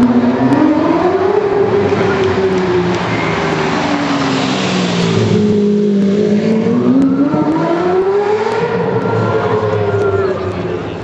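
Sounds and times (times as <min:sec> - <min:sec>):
car engine revving: 0:00.0 - 0:11.0.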